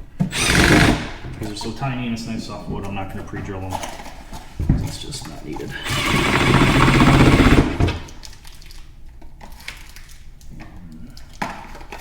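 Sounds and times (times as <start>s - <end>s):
power drill driving screw into wood: 0.2s - 1.4s, 5.7s - 8.2s.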